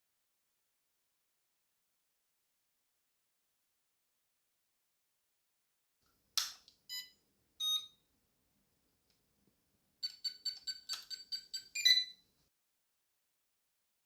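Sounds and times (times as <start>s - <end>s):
electronic beeps: 10.0s - 12.2s.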